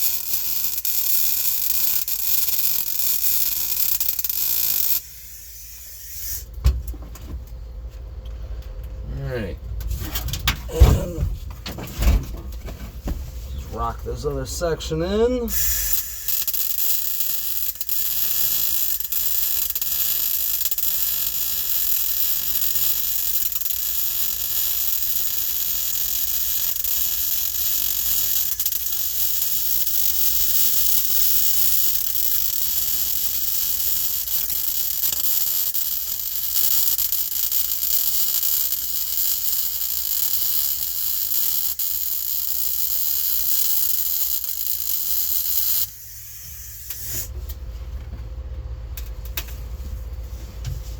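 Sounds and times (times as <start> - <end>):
welding arc crackling: 0.0 - 6.5, 13.7 - 47.4.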